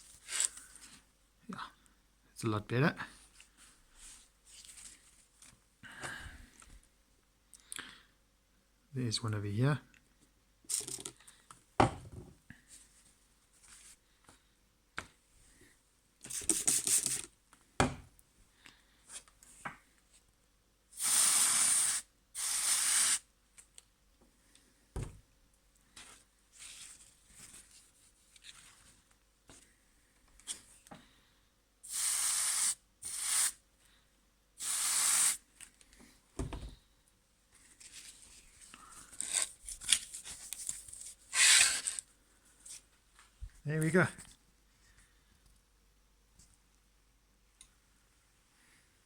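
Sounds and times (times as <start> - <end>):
spray bottle squirting: 16.3 - 17.3, 21.0 - 23.2, 31.9 - 33.6, 34.6 - 35.4.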